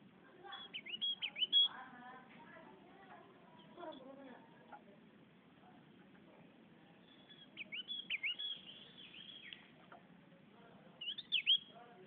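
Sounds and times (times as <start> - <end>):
bird singing high whistled notes: 0.5 - 1.7, 7.0 - 9.6, 11.0 - 11.8.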